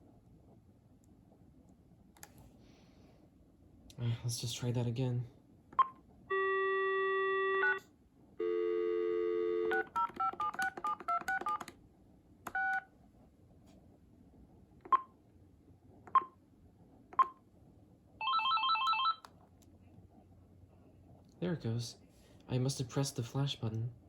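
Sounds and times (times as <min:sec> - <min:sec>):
phone dial tone: 0:08.4 - 0:11.7, 0:12.5 - 0:12.8, 0:18.2 - 0:19.3
touch-tone dialing: 0:09.6 - 0:11.7, 0:12.5 - 0:12.8, 0:18.2 - 0:19.2
phone key beeps: 0:09.7 - 0:11.7.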